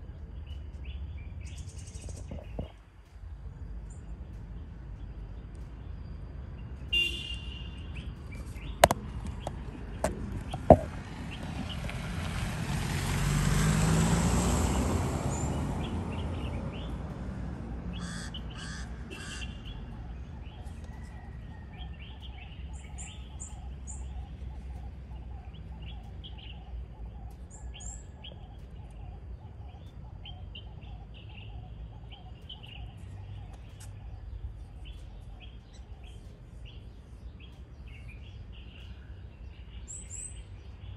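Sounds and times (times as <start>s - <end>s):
small birds chirping: 0.0s - 12.2s, 13.6s - 40.9s
sharp knocks: 8.8s - 11.1s.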